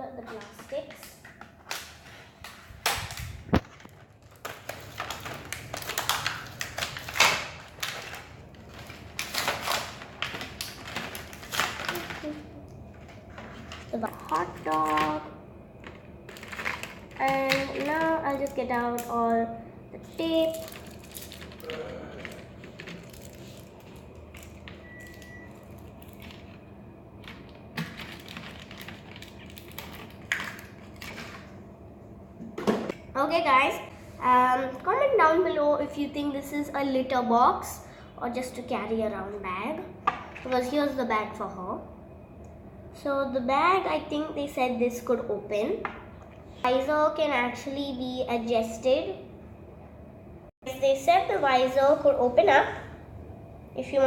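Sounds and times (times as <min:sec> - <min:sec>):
plastic packaging crinkling: 0:01.6 - 0:15.2, 0:15.8 - 0:19.1, 0:20.2 - 0:26.6, 0:27.3 - 0:31.5.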